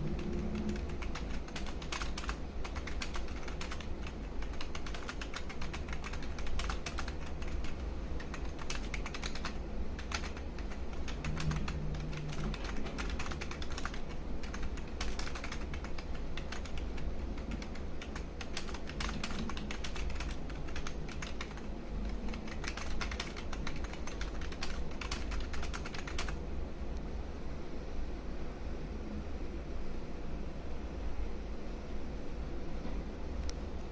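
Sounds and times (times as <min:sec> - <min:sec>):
keyboard typing: 0:00.0 - 0:26.4
steady low hum: 0:00.0 - 0:33.9.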